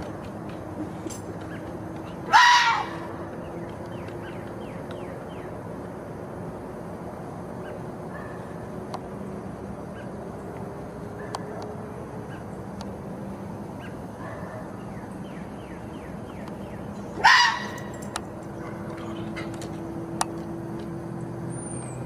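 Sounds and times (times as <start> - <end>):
fox calling: 2.2 - 3.2, 17.2 - 17.9.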